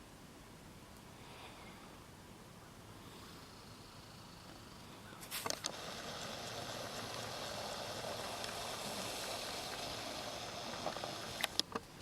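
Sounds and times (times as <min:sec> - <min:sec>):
steady hiss: 0:00.0 - 0:12.0
sharp clicks: 0:05.4 - 0:11.9.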